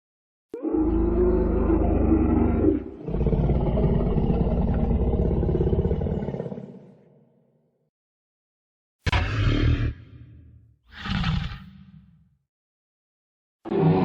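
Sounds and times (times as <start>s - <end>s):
deep growling dinosaur roar: 0.6s - 7.2s, 9.1s - 10.3s, 10.9s - 12.0s, 13.7s - 14.0s.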